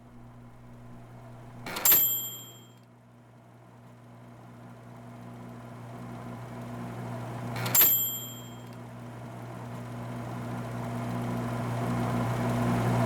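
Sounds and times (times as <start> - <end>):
low steady hum: 0.0 - 2.7
typewriter bell dinging: 1.5 - 2.8, 7.6 - 8.8
typewriter clatter: 1.6 - 2.6, 7.6 - 8.7.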